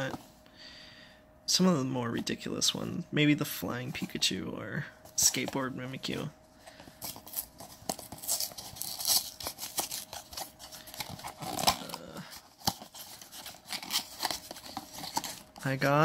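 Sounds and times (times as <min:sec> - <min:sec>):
packaging being torn open: 0:07.0 - 0:15.4.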